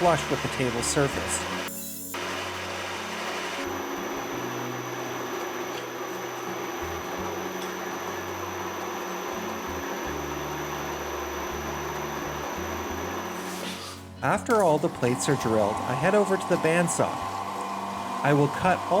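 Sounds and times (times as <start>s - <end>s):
milling machine cutting steel: 0.0s - 3.8s, 14.2s - 19.0s.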